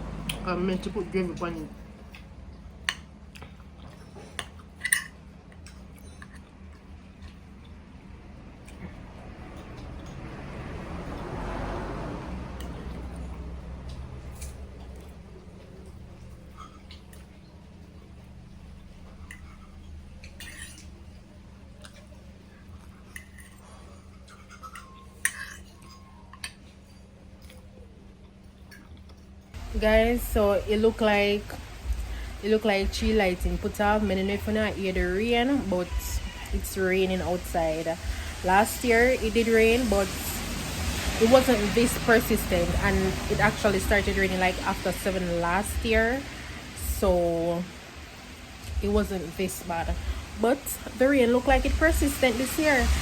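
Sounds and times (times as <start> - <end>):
steady low hum: 0.0 - 26.2, 26.9 - 53.0
quiet eating sounds: 0.0 - 53.0
utensils clinking on a dish: 3.8 - 7.4, 19.1 - 21.2, 22.8 - 27.8
cutlery clinking on plate: 4.1 - 6.4, 24.3 - 27.0.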